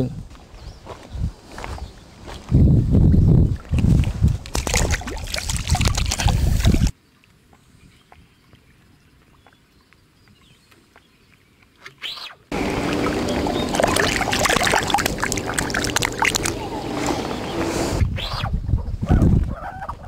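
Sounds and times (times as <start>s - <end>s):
wind rumble: 1.1s - 6.9s, 12.5s - 20.0s
water sloshing and splashing: 3.5s - 7.0s, 12.5s - 17.9s.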